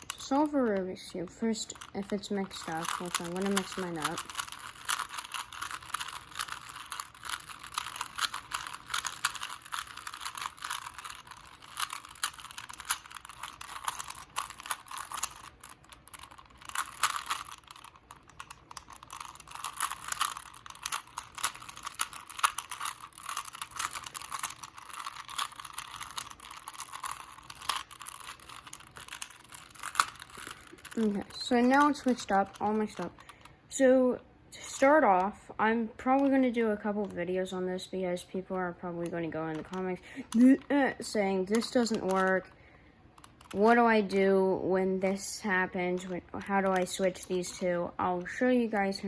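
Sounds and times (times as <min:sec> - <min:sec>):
plastic cube clicking: 0:01.6 - 0:33.5.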